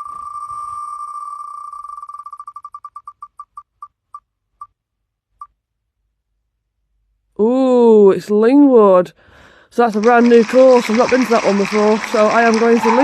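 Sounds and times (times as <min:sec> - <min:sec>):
spinning wheel ticking: 0:00.0 - 0:03.9.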